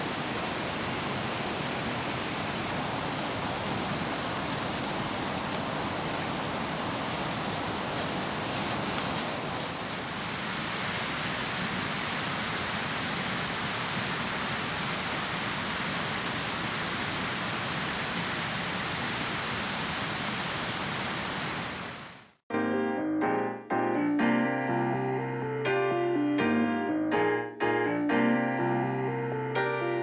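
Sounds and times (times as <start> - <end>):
piano music: 22.5 - 30.0.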